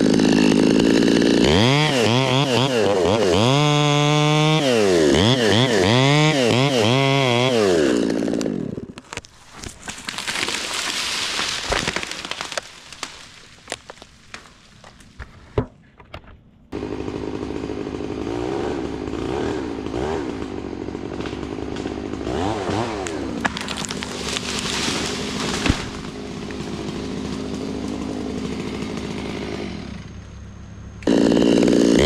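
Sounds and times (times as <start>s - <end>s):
chainsaw idling with throttle blips: 0.0s - 9.2s, 16.7s - 32.0s
chainsaw cutting: 0.0s - 15.6s, 16.7s - 32.0s
scattered knocks and cracks: 8.9s - 16.4s, 23.0s - 26.7s.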